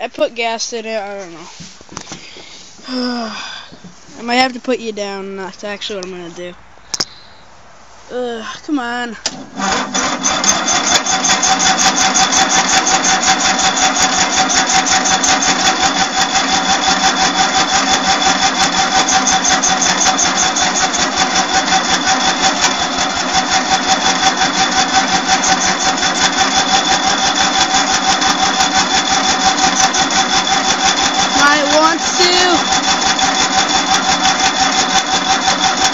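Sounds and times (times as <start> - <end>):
engine cranking on starter: 9.2 - 35.9.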